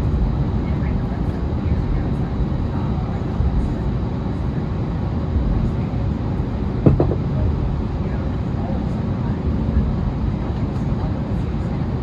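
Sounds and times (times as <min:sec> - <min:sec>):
airliner cabin low rumble: 0:00.0 - 0:12.0
short knock: 0:06.8 - 0:07.3.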